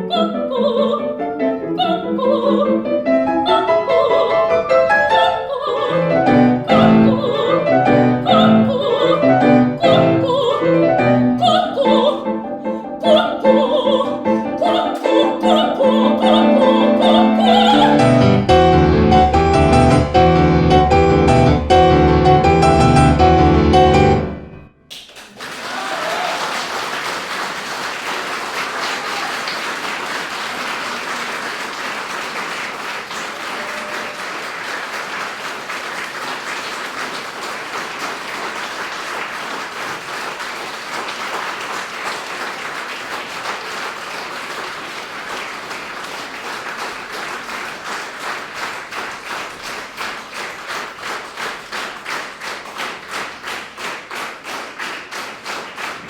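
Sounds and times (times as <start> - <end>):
audience applauding: 24.9 - 56.0
rhythmic clapping in unison: 24.9 - 56.0.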